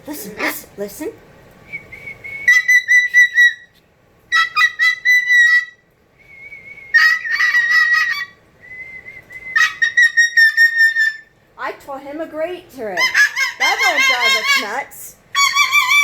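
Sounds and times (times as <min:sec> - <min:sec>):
soft plain whistle tones: 0:01.6 - 0:03.7, 0:06.2 - 0:07.0, 0:08.6 - 0:09.6
cockatoo whistling shrilly: 0:01.7 - 0:03.7, 0:04.3 - 0:11.3, 0:15.4 - 0:16.0.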